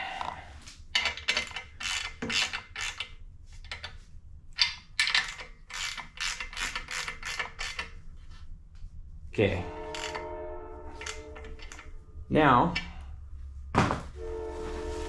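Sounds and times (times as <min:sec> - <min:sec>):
ratchet wrench clicking: 0:01.0 - 0:03.9, 0:04.6 - 0:08.0, 0:10.0 - 0:10.2, 0:11.0 - 0:11.9.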